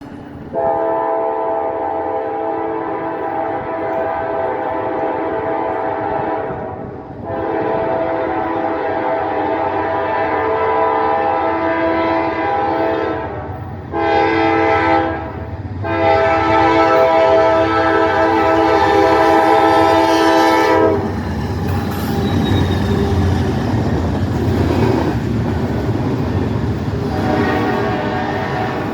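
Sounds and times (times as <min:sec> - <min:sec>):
train running noise: 0:00.0 - 0:28.9
locomotive air horn: 0:00.5 - 0:21.2, 0:27.0 - 0:28.9.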